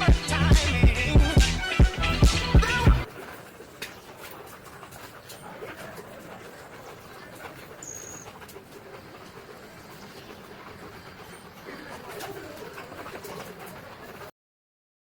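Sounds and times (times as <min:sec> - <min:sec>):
animal soft cooing: 0:04.5 - 0:14.3.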